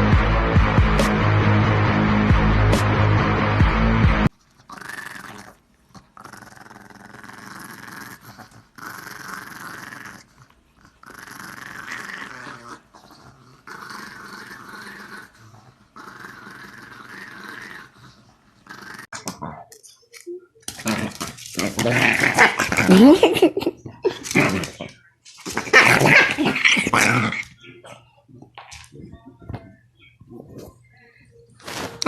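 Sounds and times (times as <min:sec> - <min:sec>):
dog growling: 0:04.6 - 0:19.7, 0:20.7 - 0:29.2.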